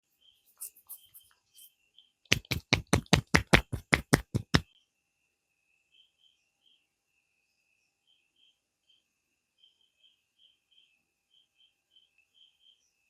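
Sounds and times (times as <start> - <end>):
rapid sharp knocks: 2.3 - 4.6.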